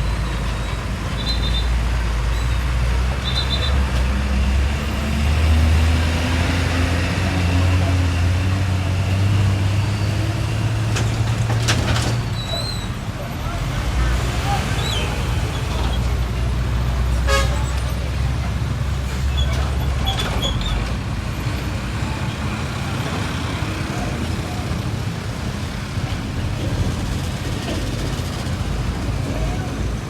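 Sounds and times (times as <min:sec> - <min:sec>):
bus engine rumble: 0:00.0 - 0:30.0
tyre and road noise: 0:00.0 - 0:30.0.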